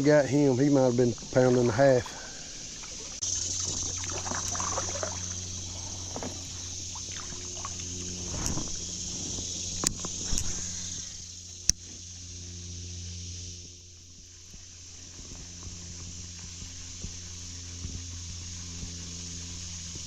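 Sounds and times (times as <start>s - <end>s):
steady low hum: 0.0s - 20.0s
creek water rushing: 0.7s - 8.5s.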